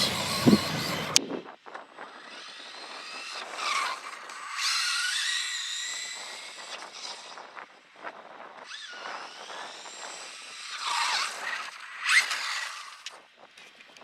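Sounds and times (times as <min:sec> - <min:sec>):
tyre noise on street: 0:00.0 - 0:01.4
electric motor whining: 0:00.0 - 0:07.9, 0:08.6 - 0:13.2.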